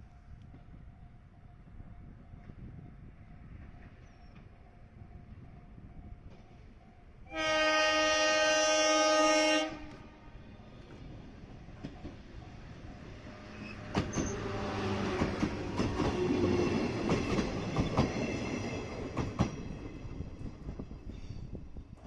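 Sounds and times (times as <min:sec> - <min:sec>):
electric train passing: 0:00.0 - 0:22.0
wheels clacking over rail joints: 0:10.7 - 0:21.1.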